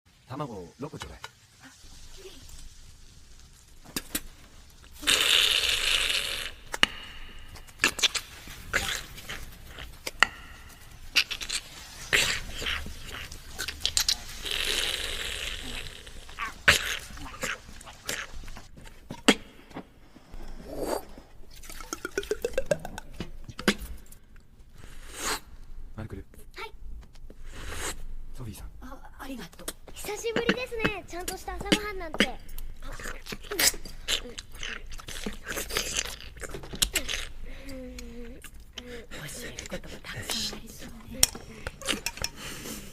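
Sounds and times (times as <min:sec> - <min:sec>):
eggs sizzling in hot pan: 0:00.1 - 0:25.9, 0:29.7 - 0:38.7
eggshells cracking: 0:01.3 - 0:19.4
mouth pop: 0:04.9 - 0:08.2, 0:21.7 - 0:24.0
mouth clicks rising in pitch: 0:05.0 - 0:10.4, 0:20.4 - 0:24.0.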